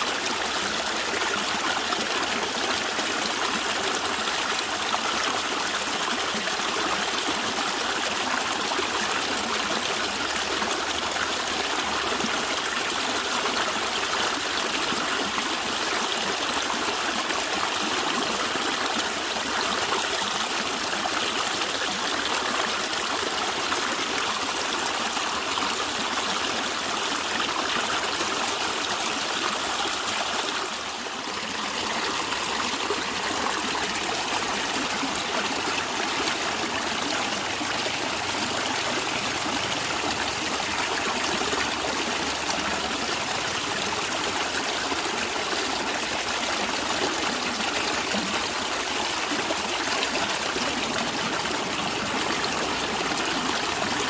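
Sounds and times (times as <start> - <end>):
stream water flowing and gurgling: 0.0 - 54.0.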